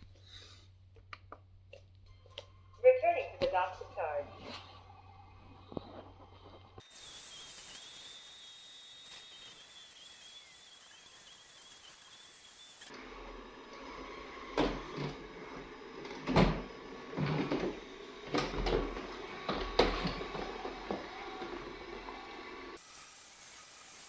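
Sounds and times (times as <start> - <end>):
mechanical knocks and clunks: 14.4 - 22.7.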